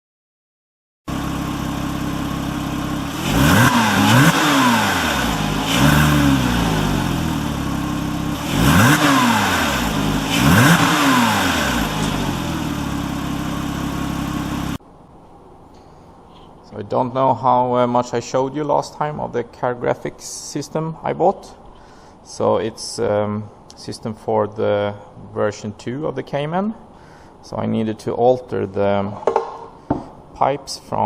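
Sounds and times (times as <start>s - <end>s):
car engine idling and revving: 1.1s - 14.8s.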